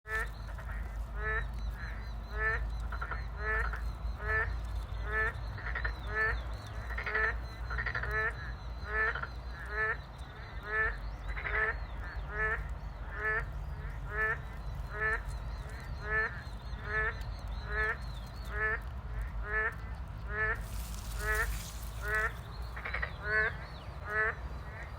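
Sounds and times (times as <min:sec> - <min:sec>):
frog croaking: 0:20.3 - 0:24.9.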